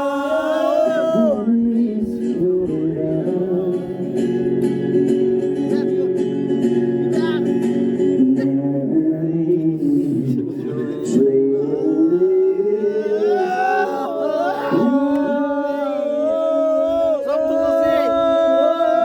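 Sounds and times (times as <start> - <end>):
group of people singing: 0.0 - 4.5, 8.2 - 19.0.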